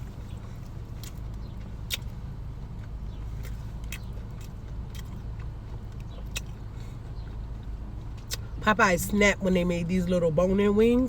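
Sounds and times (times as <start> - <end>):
crunching fried chicken: 0.0 - 8.6
car cabin engine hum: 0.0 - 11.0.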